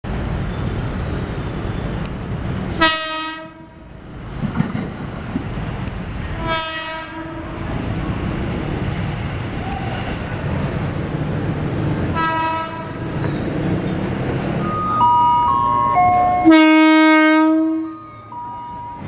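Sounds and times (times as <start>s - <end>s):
train rumble: 0.1s - 19.0s
train horn blasts: 2.8s - 3.8s, 6.3s - 7.6s, 12.1s - 13.0s, 16.2s - 18.0s.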